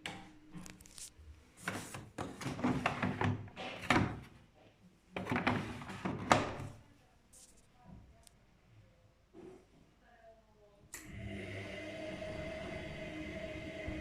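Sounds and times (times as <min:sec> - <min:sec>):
plastic knocks and clatters: 0:01.7 - 0:04.4, 0:05.2 - 0:06.8.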